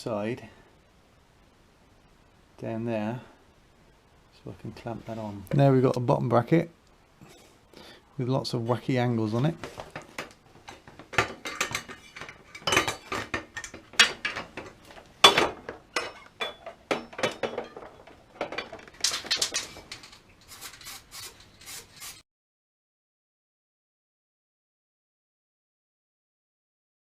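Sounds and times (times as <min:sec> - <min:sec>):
metal clinks knocks and scrapes: 0:09.6 - 0:22.2
sharp metal clanks: 0:10.7 - 0:20.1.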